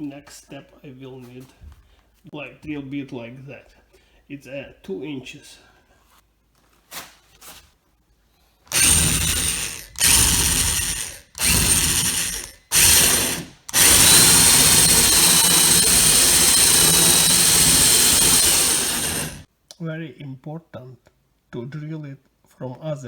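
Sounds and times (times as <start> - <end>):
power drill boring through door: 8.7 - 19.5.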